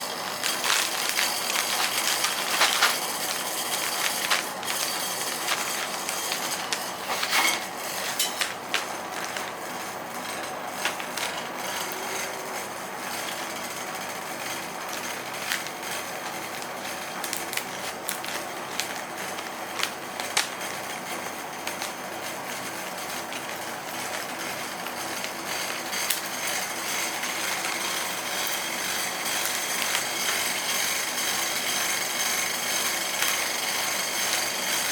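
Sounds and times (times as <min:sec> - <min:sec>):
metal spatulas chopping and scraping: 0:05.5 - 0:08.6.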